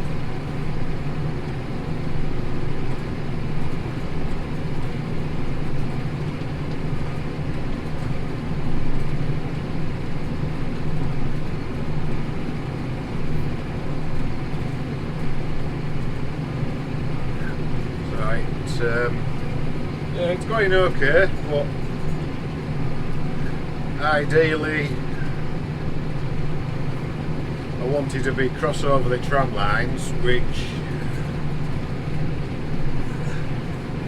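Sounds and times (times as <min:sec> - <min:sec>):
tractor engine under load: 0:16.6 - 0:34.0.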